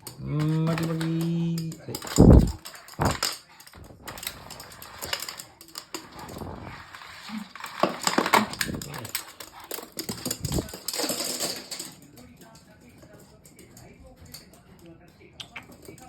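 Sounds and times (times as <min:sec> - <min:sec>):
dogs playing clicks and scuffles: 0:00.0 - 0:16.0.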